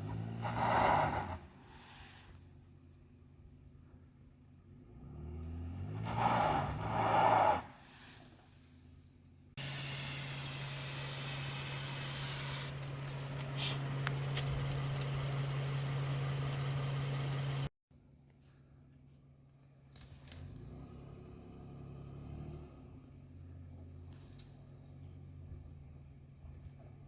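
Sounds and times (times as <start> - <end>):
truck engine revving: 0.0 - 1.5, 4.7 - 7.7
loud even hiss: 9.6 - 12.8.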